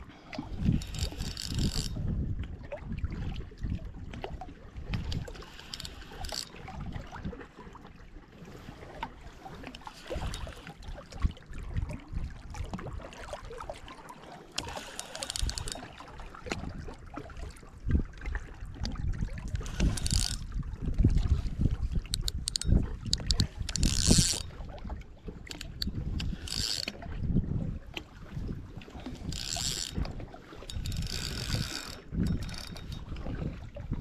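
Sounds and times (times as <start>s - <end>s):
water lapping at shore: 0.0s - 34.0s
wind buffeting microphone: 0.4s - 7.4s, 17.8s - 34.0s.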